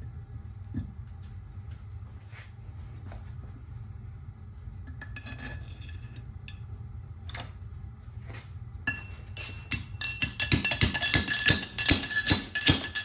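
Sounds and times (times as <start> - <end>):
metal-on-metal clinks and taps: 8.9 - 13.0.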